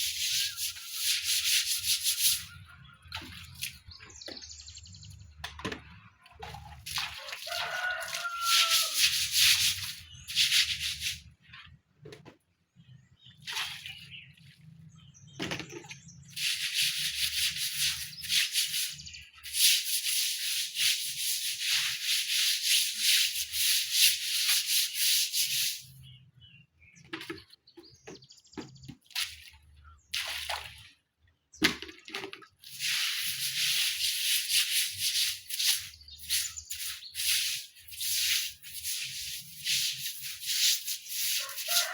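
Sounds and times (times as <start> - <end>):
brush scrubbing wet surface: 0.0 - 4.3, 6.2 - 11.7, 16.0 - 26.2, 31.9 - 41.9.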